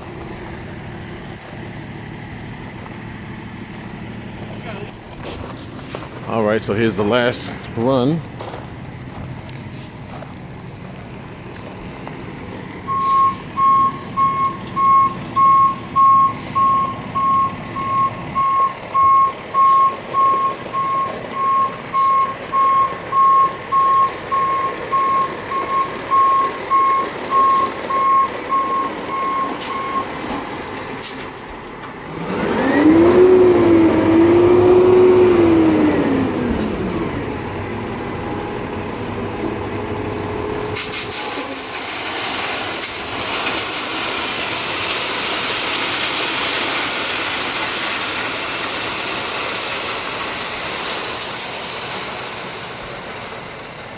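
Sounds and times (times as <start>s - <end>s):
truck engine revving: 0.0s - 53.9s
truck reversing beeper: 12.8s - 31.4s.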